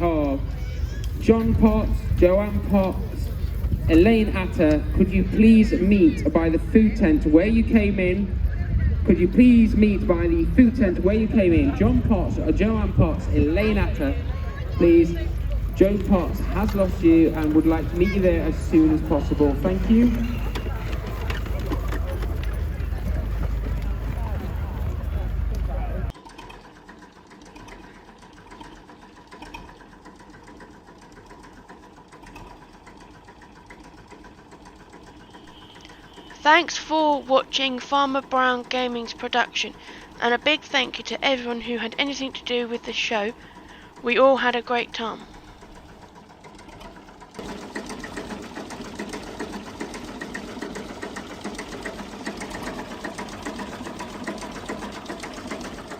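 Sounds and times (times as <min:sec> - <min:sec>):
machine hum: 0:00.0 - 0:55.9
rapid mechanical clatter of clicks: 0:25.5 - 0:40.8, 0:41.8 - 0:55.9.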